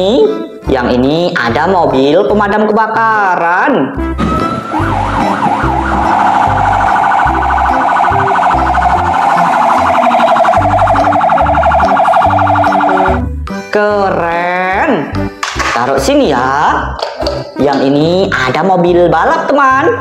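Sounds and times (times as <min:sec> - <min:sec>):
toy electronic siren: 0:04.2 - 0:13.3.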